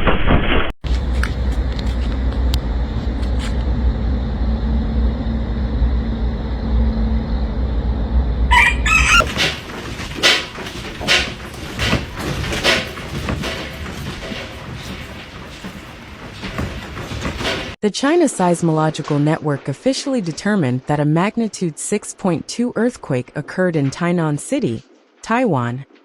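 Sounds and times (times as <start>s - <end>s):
low rumble: 0.8s - 17.8s
rooster crowing: 8.5s - 9.6s
sharp rattling knocks: 8.5s - 17.8s.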